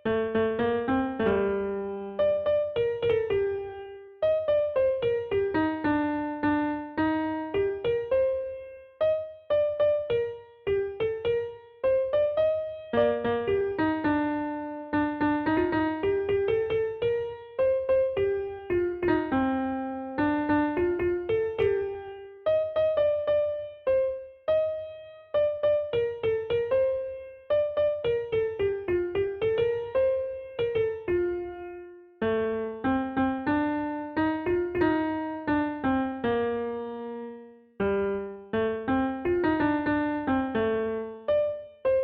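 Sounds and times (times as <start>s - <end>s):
electric piano melody: 0.0s - 42.0s.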